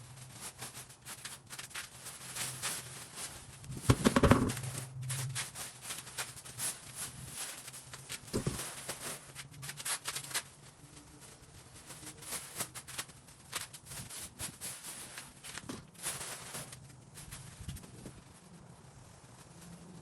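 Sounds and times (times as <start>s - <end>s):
clicks and knocks from handling: 3.8s - 4.8s.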